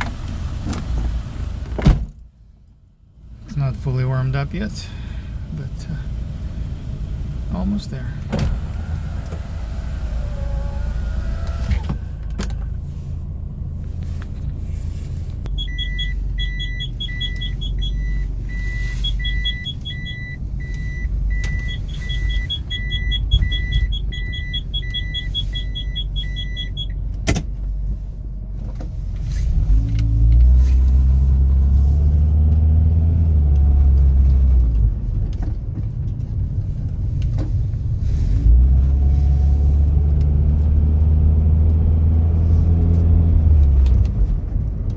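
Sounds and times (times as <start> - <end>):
car engine and road rumble: 0.0 - 44.9
high electronic beeps: 15.5 - 26.9.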